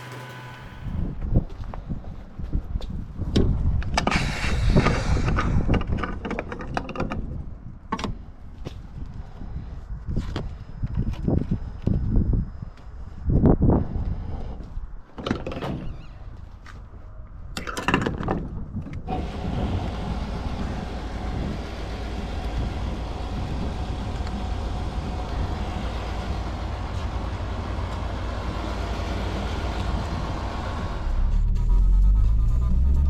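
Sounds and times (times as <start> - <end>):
car engine running: 0.0 - 1.2, 19.1 - 33.0.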